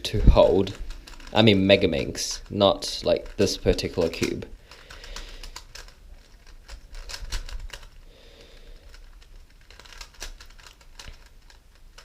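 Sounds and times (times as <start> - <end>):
plastic puzzle clicking: 0.6 - 8.0, 8.6 - 12.0.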